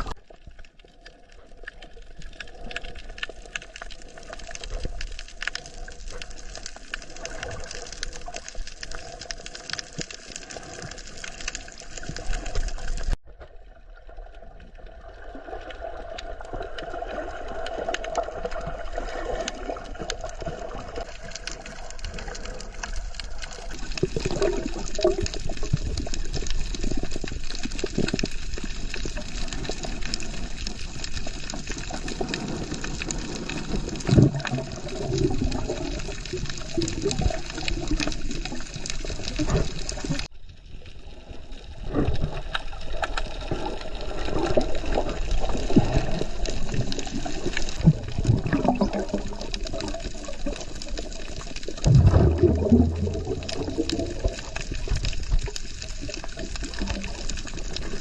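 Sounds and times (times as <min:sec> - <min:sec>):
water rushing and splashing: 0:14.1 - 0:40.3, 0:41.1 - 0:58.0.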